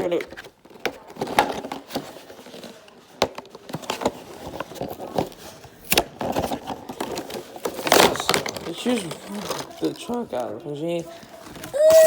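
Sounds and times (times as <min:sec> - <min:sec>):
toy and packaging handling clicks: 0:06.0 - 0:10.5.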